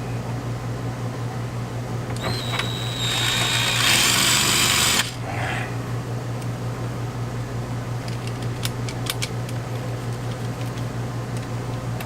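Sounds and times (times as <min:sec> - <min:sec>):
power drill motor whine: 0:02.2 - 0:05.2.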